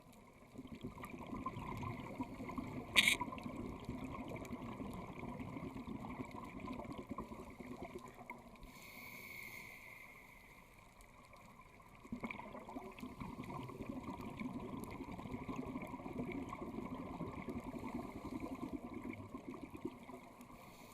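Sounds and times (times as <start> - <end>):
exhaled bubbles rumbling underwater: 0.0 - 8.6, 11.0 - 20.6
regulator inhale hiss: 8.6 - 10.8, 20.5 - 20.9.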